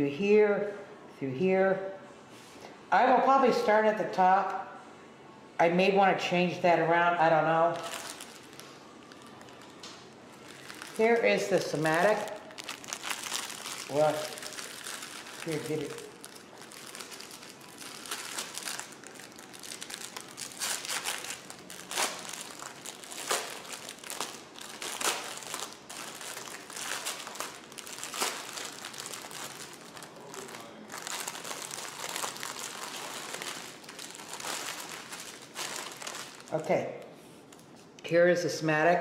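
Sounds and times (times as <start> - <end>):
packaging crinkling and rustling: 7.7 - 36.6
sharp crackles: 7.7 - 36.6.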